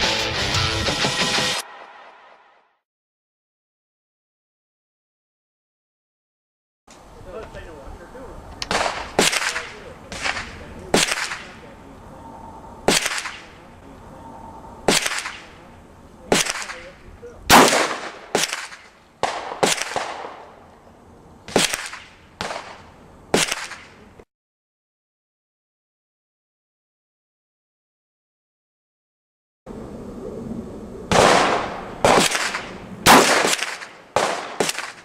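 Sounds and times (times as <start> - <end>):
rifle shots: 8.7 - 11.6, 12.9 - 13.6, 14.9 - 15.6, 16.3 - 16.9, 17.5 - 20.5, 21.5 - 24.0, 31.1 - 35.0.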